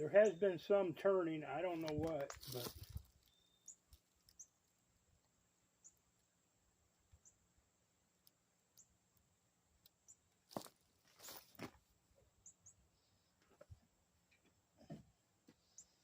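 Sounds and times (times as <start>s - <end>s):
faint high bird chirps: 3.2s - 4.6s, 12.4s - 12.8s.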